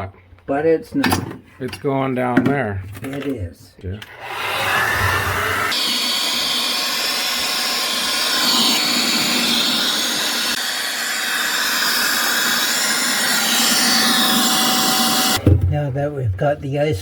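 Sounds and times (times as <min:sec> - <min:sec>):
hair dryer blowing: 0:04.2 - 0:15.4.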